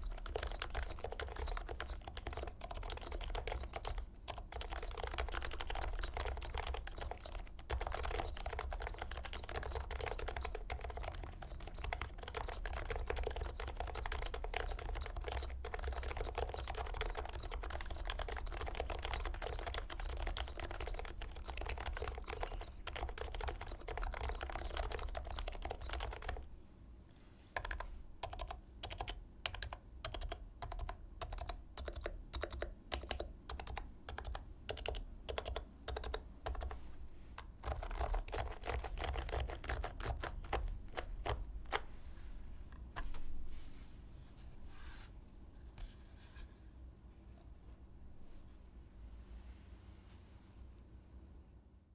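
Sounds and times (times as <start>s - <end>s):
fast typing on keyboard: 0.0s - 26.5s, 27.6s - 36.8s, 37.4s - 41.9s.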